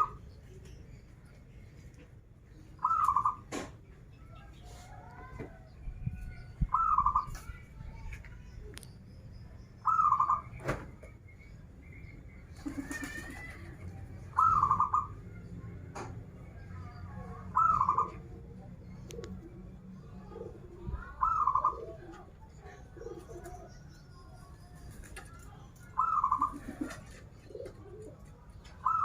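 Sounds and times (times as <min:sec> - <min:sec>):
dove cooing: 0:02.8 - 0:03.4, 0:06.7 - 0:07.4, 0:14.4 - 0:15.1, 0:17.5 - 0:18.4, 0:20.2 - 0:23.7, 0:25.9 - 0:29.0
faint chirps and clicks: 0:07.0 - 0:12.3, 0:18.9 - 0:19.7.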